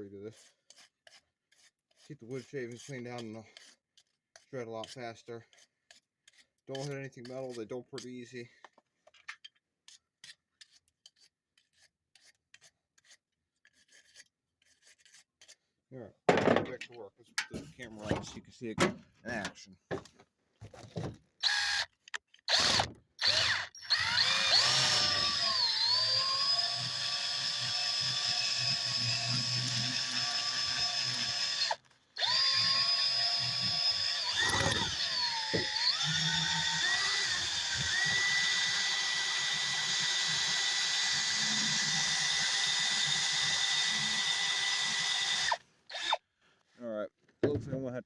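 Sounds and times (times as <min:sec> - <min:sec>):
electric drill boring into wood: 0:21.4 - 0:21.9, 0:22.5 - 0:46.2.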